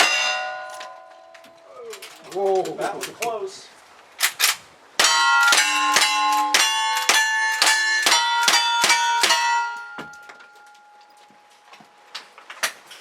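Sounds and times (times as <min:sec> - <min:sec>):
bullets clanging on steel target: 0:00.0 - 0:02.2, 0:04.4 - 0:11.2.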